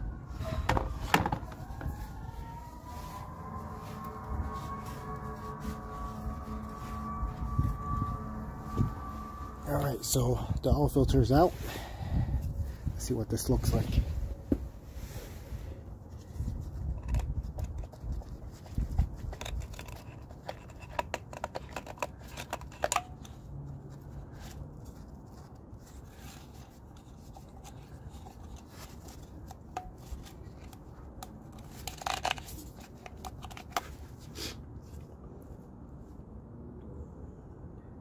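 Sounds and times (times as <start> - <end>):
clicks and scrapes of handling parts: 16.4 - 35.1.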